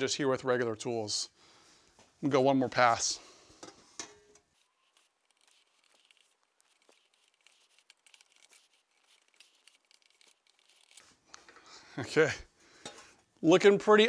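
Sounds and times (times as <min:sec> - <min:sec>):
sheet metal clicking and scraping: 0:03.6 - 0:11.0.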